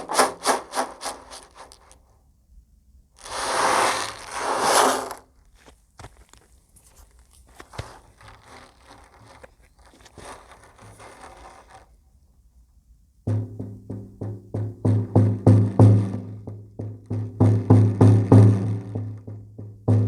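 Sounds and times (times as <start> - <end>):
low drum booms with buzzing beads: 13.3 - 20.0.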